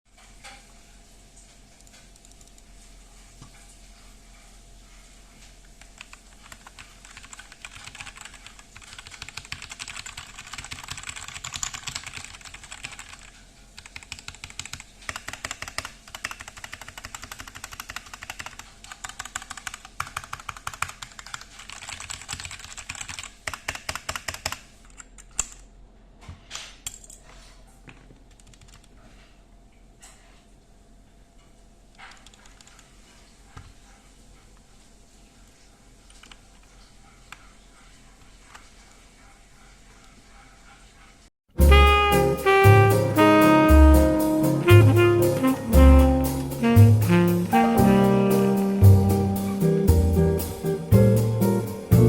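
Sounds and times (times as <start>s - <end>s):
mechanical keyboard typing: 5.9s - 25.6s, 28.3s - 28.9s.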